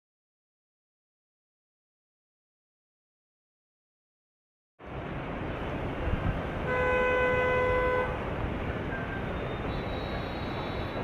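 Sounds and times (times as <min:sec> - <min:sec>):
street noise: 0:04.8 - 0:11.0
vehicle horn honking: 0:06.6 - 0:08.2.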